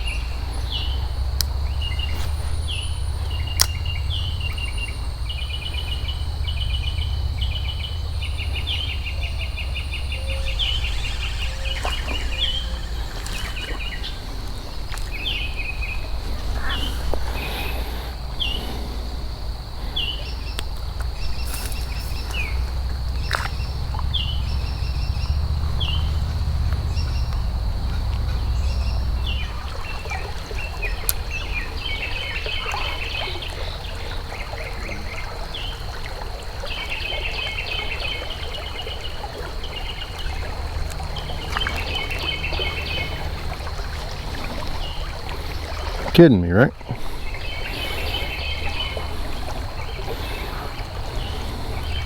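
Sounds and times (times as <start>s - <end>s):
low rumble: 0.0s - 32.2s
creek water running: 0.0s - 52.0s
small birds chirping: 0.0s - 52.0s.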